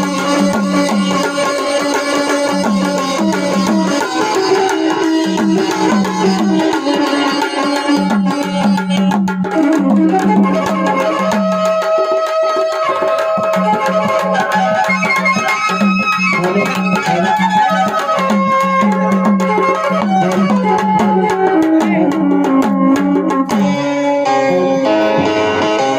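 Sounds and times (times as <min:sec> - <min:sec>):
tabla playing a rhythm: 0:00.0 - 0:25.9
sustained melodic instruments: 0:23.1 - 0:25.9.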